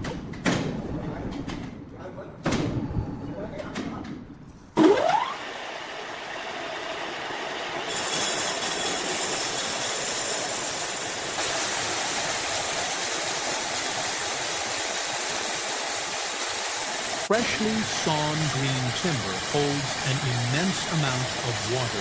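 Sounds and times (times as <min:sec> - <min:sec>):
sawmill machinery hissing: 0:05.2 - 0:22.0.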